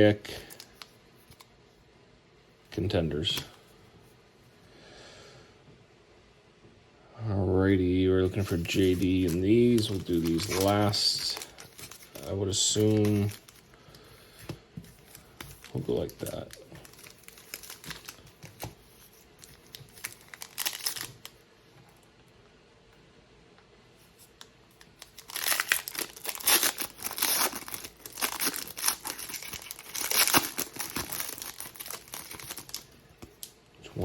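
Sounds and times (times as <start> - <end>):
wrappers tearing and crinkling: 8.2 - 13.7, 15.0 - 21.4, 25.0 - 33.5.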